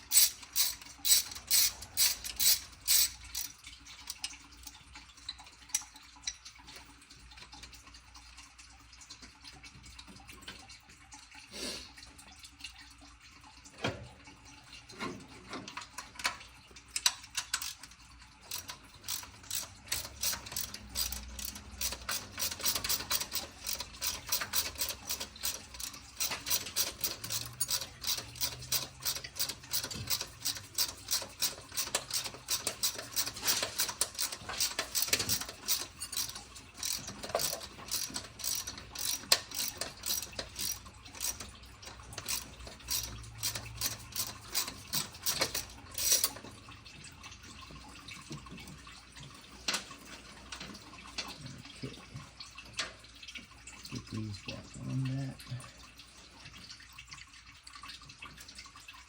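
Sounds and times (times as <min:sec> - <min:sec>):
socket ratchet clicking: 0:00.0 - 0:03.5, 0:18.5 - 0:46.4.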